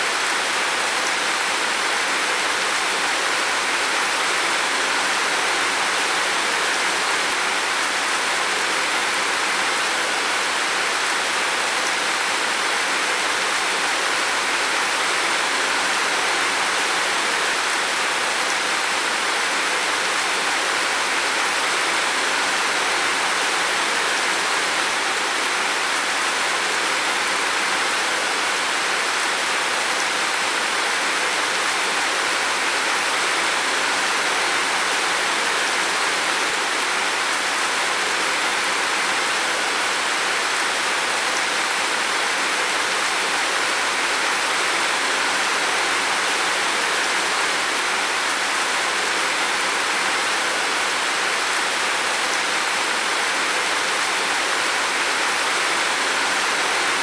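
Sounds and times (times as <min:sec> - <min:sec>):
heavy rain on a roof: 0:00.0 - 0:57.0.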